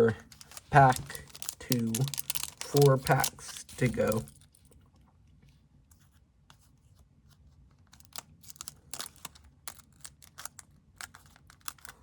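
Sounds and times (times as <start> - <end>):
foil wrapper crinkling and tearing: 0.2 - 4.6, 8.0 - 12.0.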